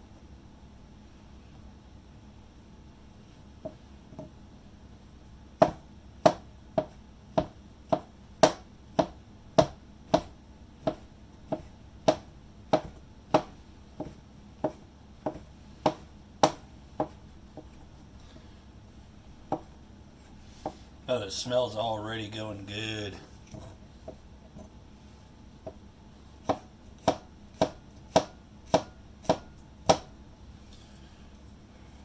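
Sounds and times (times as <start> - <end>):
knife chopping on cutting board: 5.6 - 17.8, 19.5 - 19.8, 20.6 - 20.8, 26.4 - 30.1.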